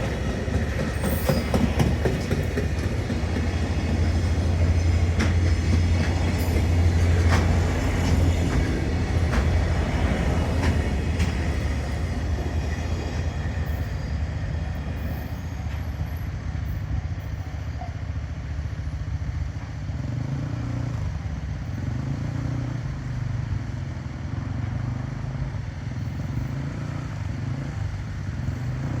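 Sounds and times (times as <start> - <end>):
freight train wagons rolling: 0.0 - 19.9.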